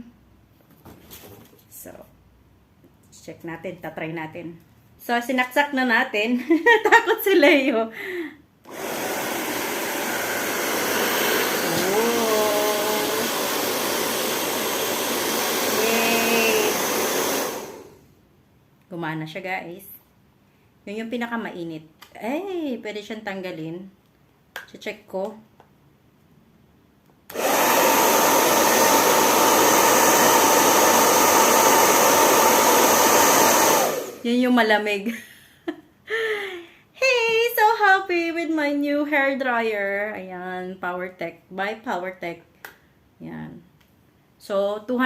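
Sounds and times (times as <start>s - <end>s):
hair dryer blowing: 8.6s - 18.1s, 27.3s - 34.5s
fan whining: 8.7s - 18.0s, 27.3s - 34.5s.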